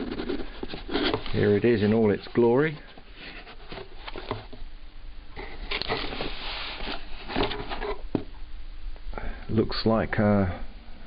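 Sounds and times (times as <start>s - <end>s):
handling rustling: 0.0s - 4.6s, 5.4s - 8.4s.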